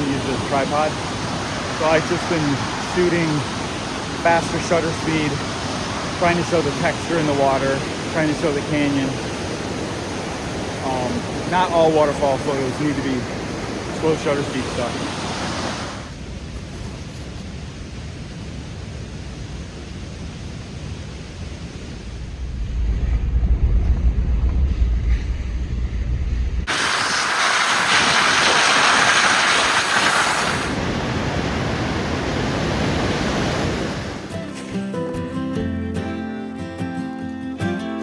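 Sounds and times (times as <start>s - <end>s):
waterfall rushing water: 0.0s - 16.1s, 26.6s - 34.4s
acoustic guitar music: 34.2s - 38.0s.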